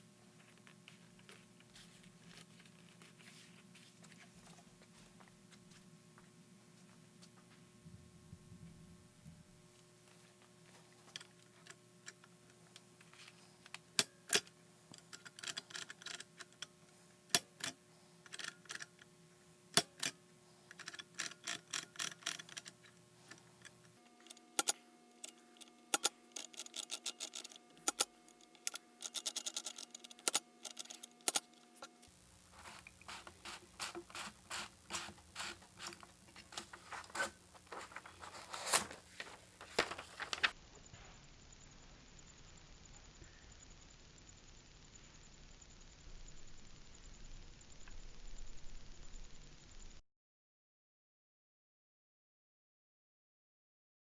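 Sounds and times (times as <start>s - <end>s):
background hum: 0.0s - 50.0s
toy typewriter clicking: 14.0s - 16.7s, 17.3s - 19.1s, 19.8s - 22.8s, 24.0s - 32.0s, 32.6s - 40.5s.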